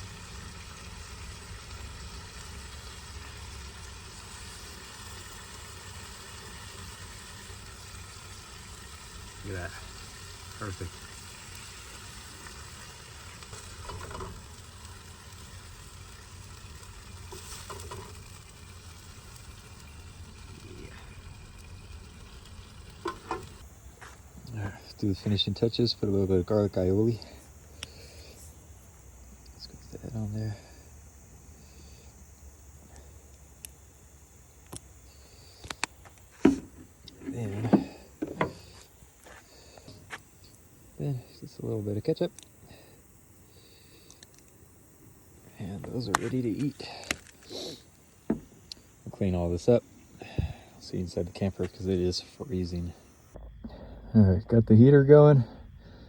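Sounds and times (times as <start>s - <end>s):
short pitched sputter: 0.0s - 23.7s
patties sizzling on a grill: 0.0s - 53.4s.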